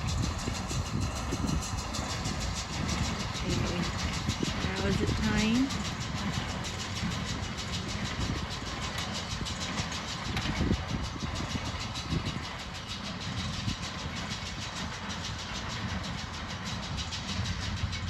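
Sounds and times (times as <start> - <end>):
hay baler mechanical pulsing: 0.0 - 18.0
tractor engine rumble: 0.0 - 18.0.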